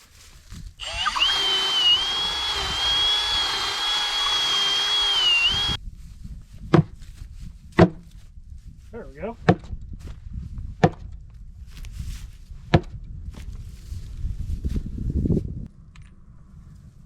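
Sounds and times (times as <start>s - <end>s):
electric drill boring into wood: 0.8s - 5.8s.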